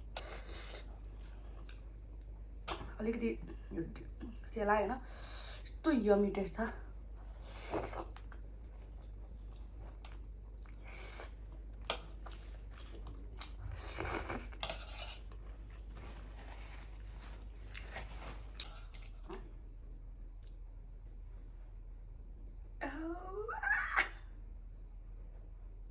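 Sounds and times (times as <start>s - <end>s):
chewing and biting food: 7.7s - 16.0s.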